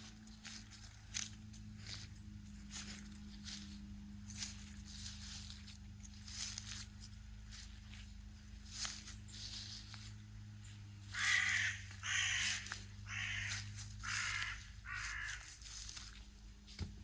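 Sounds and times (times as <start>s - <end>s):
crow cawing: 11.1s - 15.6s.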